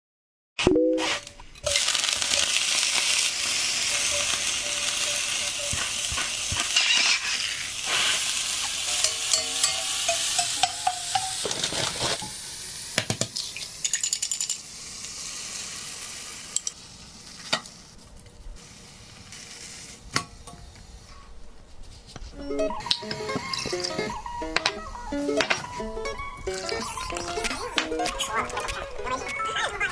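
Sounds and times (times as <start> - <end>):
utensil scraping a pan: 1.0 - 12.3
food sizzling in a frying pan: 1.0 - 21.2.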